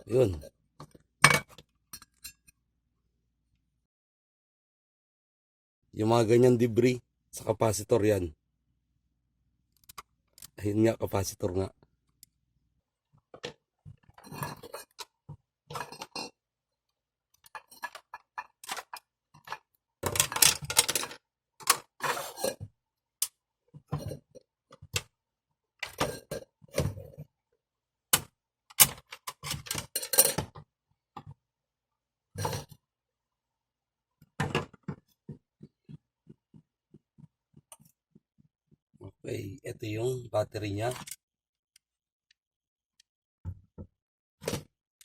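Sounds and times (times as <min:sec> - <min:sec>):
small parts clicking and clinking: 0:17.4 - 0:21.9, 0:40.9 - 0:41.2.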